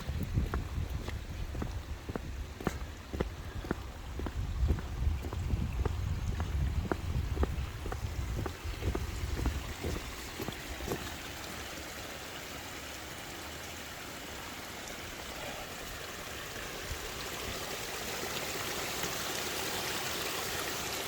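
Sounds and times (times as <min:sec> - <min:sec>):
wind buffeting microphone: 0:00.0 - 0:11.4
water rushing: 0:00.0 - 0:21.0.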